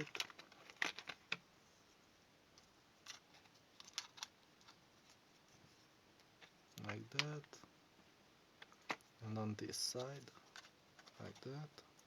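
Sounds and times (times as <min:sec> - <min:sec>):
plastic devices clicking and tapping: 0:00.0 - 0:01.4.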